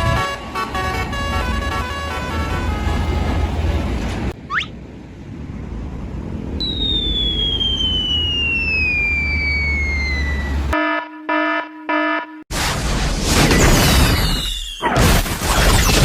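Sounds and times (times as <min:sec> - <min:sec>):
whistle falling in pitch: 0:06.6 - 0:10.7.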